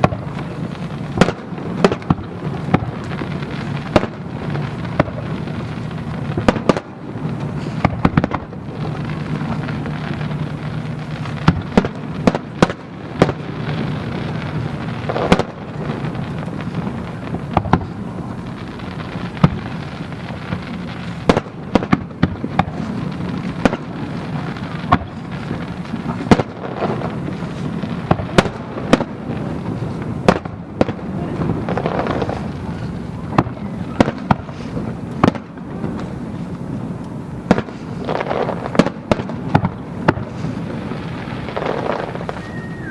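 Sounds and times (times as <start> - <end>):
fireworks bangs: 0.0 - 42.9.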